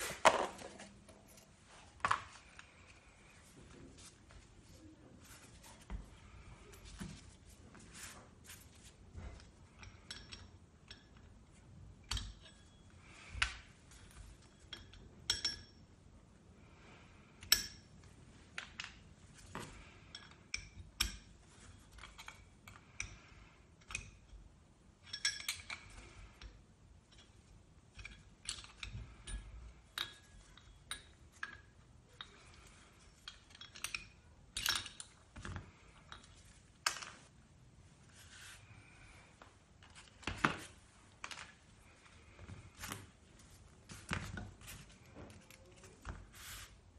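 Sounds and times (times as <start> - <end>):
metal tools and parts clinking: 9.3 - 11.4, 25.0 - 37.2.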